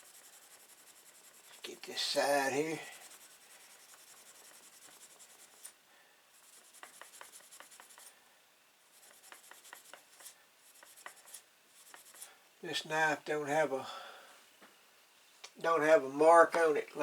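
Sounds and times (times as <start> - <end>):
steel wool scrubbing a blade: 0.0 - 5.7.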